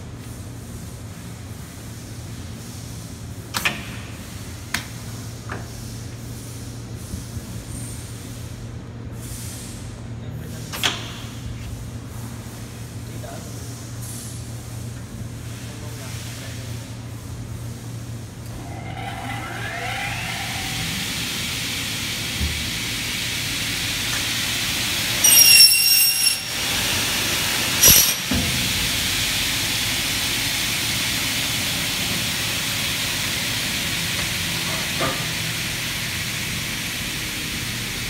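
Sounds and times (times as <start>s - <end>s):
blade screeching through aluminium: 18.4s - 21.7s, 25.2s - 26.7s, 27.8s - 28.3s
cutting saw spinning: 18.4s - 22.3s, 25.2s - 27.0s.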